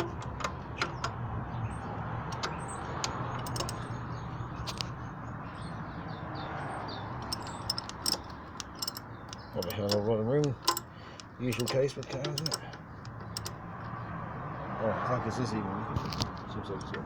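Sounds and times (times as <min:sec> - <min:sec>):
hand tools clicking on engine: 0:00.0 - 0:01.2, 0:02.2 - 0:04.0, 0:07.2 - 0:13.6, 0:16.8 - 0:17.0
small birds chirping: 0:00.0 - 0:17.0.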